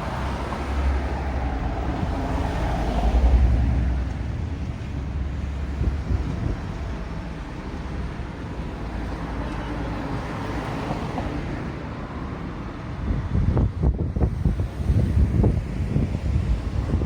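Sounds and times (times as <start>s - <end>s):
wind rumble on microphone: 0.0s - 8.3s, 12.6s - 17.0s
road traffic passing: 0.0s - 17.0s.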